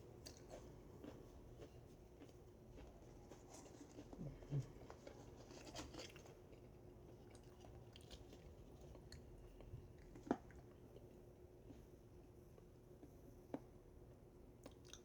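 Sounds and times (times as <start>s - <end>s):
chewing and crunching crisps: 0.0s - 12.0s, 14.6s - 15.0s.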